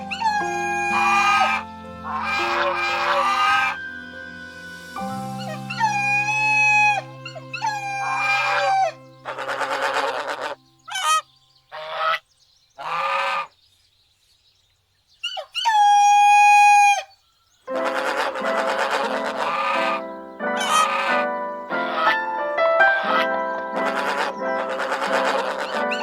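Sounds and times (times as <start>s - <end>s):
long animal calls: 0.0s - 3.8s, 5.4s - 12.2s, 15.2s - 17.1s, 17.7s - 22.2s, 22.9s - 26.0s
soft steady music: 0.0s - 11.6s, 17.7s - 26.0s.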